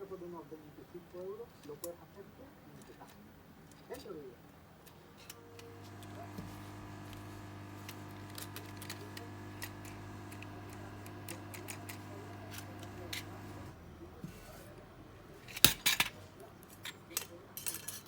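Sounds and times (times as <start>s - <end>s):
electrical hum with whine: 5.2s - 14.5s
metal tools clattering: 15.5s - 18.0s.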